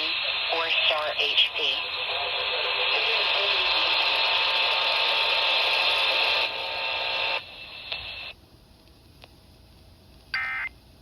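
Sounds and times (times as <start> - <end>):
radio hiss: 0.0 - 8.4.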